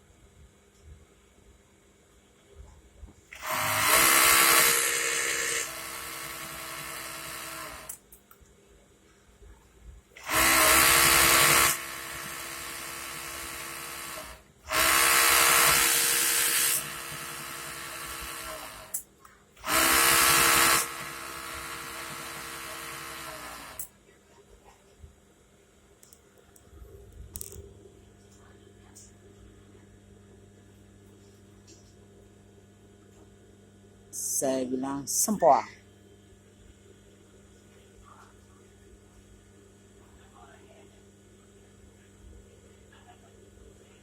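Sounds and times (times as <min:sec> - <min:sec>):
small electric motor humming: 0:03.3 - 0:08.0, 0:10.2 - 0:19.0, 0:19.6 - 0:23.9.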